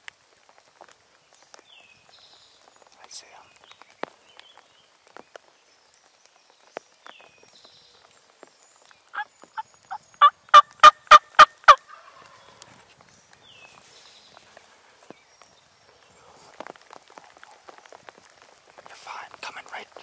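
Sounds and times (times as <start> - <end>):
turkey yelping: 10.2 - 12.3.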